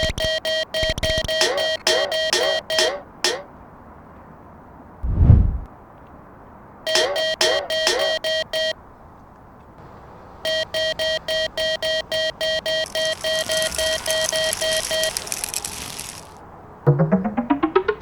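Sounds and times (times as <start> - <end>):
railroad crossing warning bell: 1.3 - 3.5, 6.9 - 8.8, 10.4 - 15.2.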